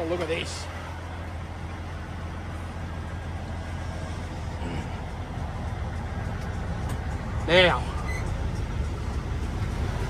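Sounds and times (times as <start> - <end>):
diesel truck engine idling: 0.0 - 10.0.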